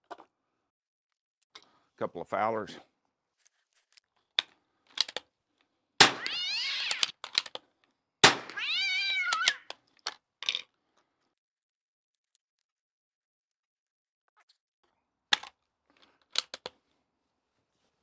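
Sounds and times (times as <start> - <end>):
rifle shots: 6.0 - 6.4, 8.2 - 8.6
small clicks: 6.8 - 8.0, 9.1 - 11.4, 14.4 - 16.8.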